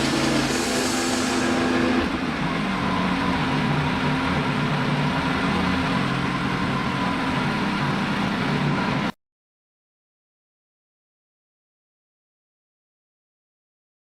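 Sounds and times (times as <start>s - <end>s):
sawmill engine running: 0.0s - 9.1s.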